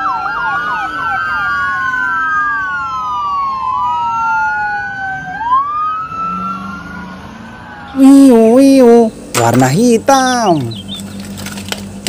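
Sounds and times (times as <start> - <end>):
police siren wailing: 0.0 - 9.2.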